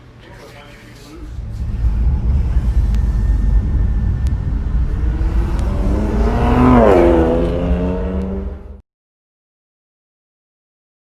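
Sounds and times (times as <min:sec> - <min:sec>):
car engine revving: 0:01.2 - 0:08.8.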